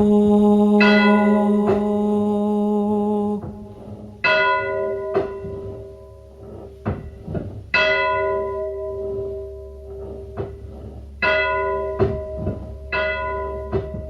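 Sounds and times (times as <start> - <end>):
low steady hum: 0.0 - 14.0
bell ringing: 0.8 - 1.7, 4.2 - 6.3, 7.8 - 9.9, 11.2 - 14.0
faint knocks: 3.4 - 14.0.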